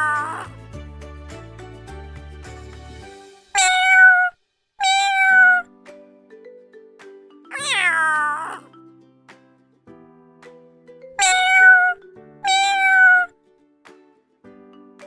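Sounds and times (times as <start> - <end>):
soft background music: 0.0 - 4.0, 5.5 - 15.0
cat meowing: 3.6 - 5.6, 7.6 - 8.7, 11.2 - 13.3.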